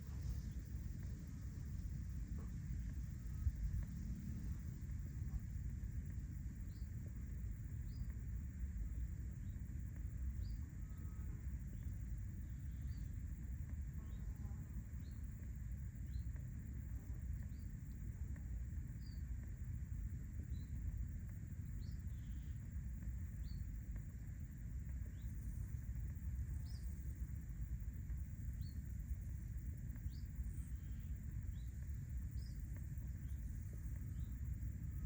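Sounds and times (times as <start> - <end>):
insects humming: 0.0 - 35.0
wind rumbling on microphone: 0.0 - 35.0
bird chirping: 21.8 - 22.6, 30.0 - 32.6, 33.2 - 35.0.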